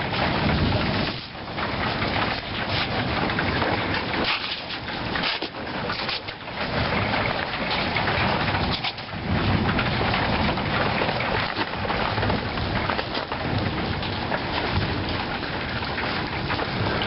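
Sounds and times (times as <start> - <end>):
hailstones striking surfaces: 0.0 - 17.0
low rumble: 4.8 - 17.0.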